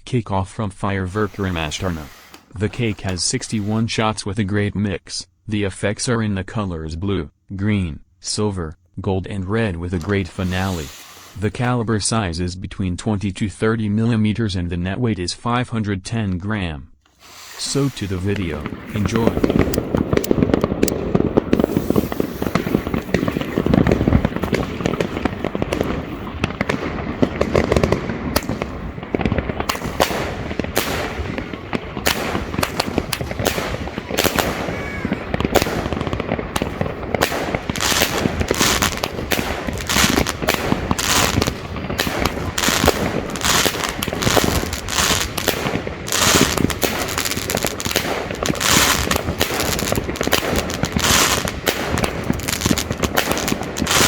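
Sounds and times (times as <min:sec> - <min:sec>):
firework aerial bursts: 0:00.8 - 0:04.1, 0:09.9 - 0:12.0, 0:17.1 - 0:54.0
firework launch thumps: 0:00.9 - 0:04.1, 0:10.0 - 0:12.0, 0:17.1 - 0:54.0.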